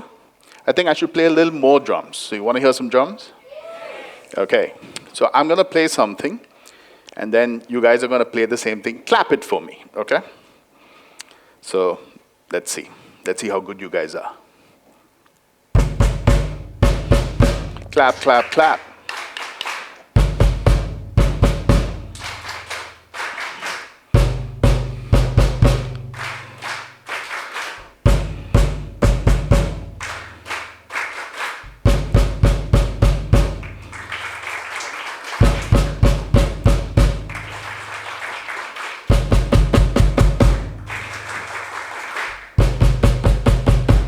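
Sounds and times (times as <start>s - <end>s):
drum kit rhythmic phrase: 15.8s - 19.1s, 20.1s - 44.0s
crowd clapping a rhythm: 15.8s - 44.0s.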